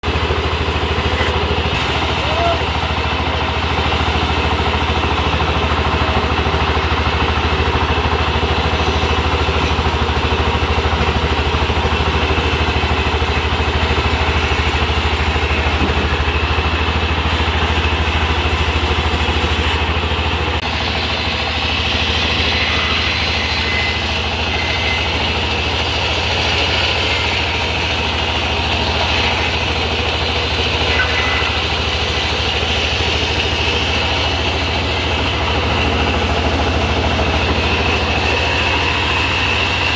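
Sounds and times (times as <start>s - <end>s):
sawmill engine humming: 0.0s - 39.9s.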